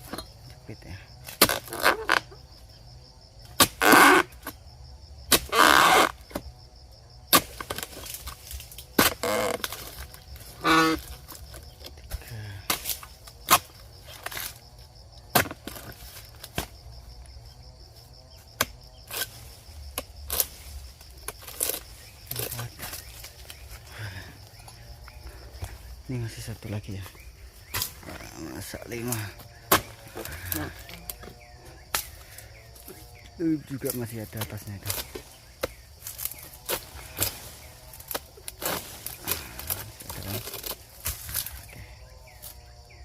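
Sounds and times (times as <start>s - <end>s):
high insect buzz: 0.0s - 43.0s
fronds crashing and rustling: 7.4s - 11.8s, 19.1s - 24.1s, 33.8s - 41.7s.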